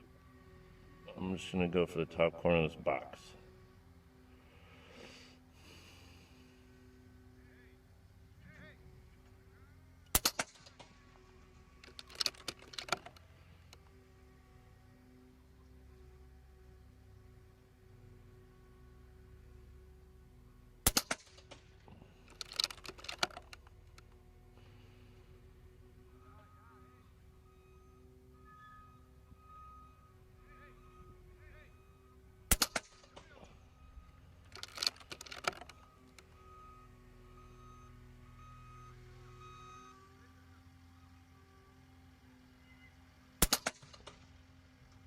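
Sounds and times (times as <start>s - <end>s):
air rifle shot: 10.1s - 10.8s, 20.8s - 21.5s, 32.5s - 33.3s, 43.4s - 44.0s
sharp crack: 10.1s - 11.0s, 20.8s - 21.7s, 32.5s - 33.4s, 43.4s - 44.2s
mechanical clicks: 11.8s - 13.2s, 22.3s - 24.1s, 34.4s - 36.3s
faint low hum: 21.6s - 43.1s.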